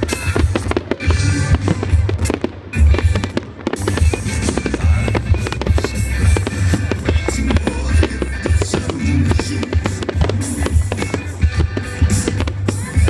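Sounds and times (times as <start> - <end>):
fireworks bangs and crackles: 0.0 - 13.0
pop music with bass beat: 4.0 - 13.0.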